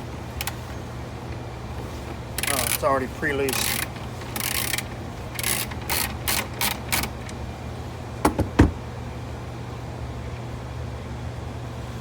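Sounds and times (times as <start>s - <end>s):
socket ratchet rasping: 2.4s - 2.8s, 3.5s - 7.4s
sharp knocks: 8.2s - 8.8s.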